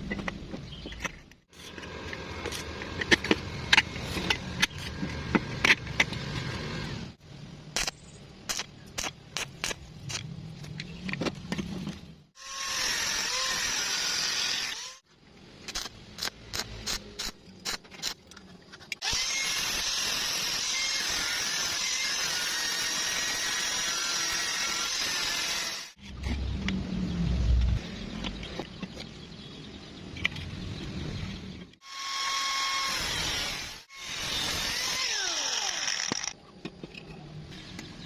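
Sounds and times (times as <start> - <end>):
power tool whine: 31.8 - 36.4.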